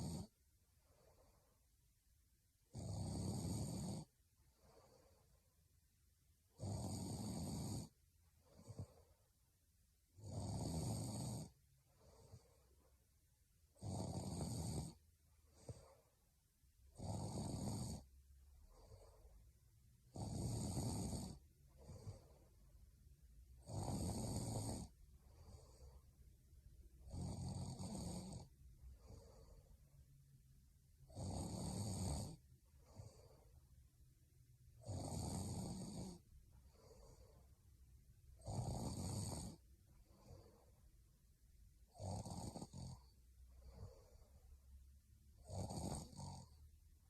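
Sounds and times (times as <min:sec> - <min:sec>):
woman snoring: 0:00.0 - 0:00.3, 0:02.7 - 0:05.3, 0:06.5 - 0:09.1, 0:10.2 - 0:12.7, 0:13.8 - 0:16.1, 0:16.9 - 0:19.4, 0:20.1 - 0:22.5, 0:23.6 - 0:26.1, 0:27.0 - 0:29.7, 0:31.1 - 0:33.5, 0:34.8 - 0:37.5, 0:38.4 - 0:40.8, 0:41.9 - 0:44.6, 0:45.4 - 0:46.6
quiet breathing: 0:00.0 - 0:47.0.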